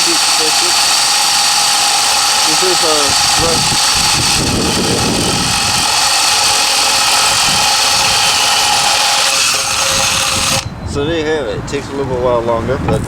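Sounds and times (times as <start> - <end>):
cordless drill boring into wood: 0.0 - 10.7.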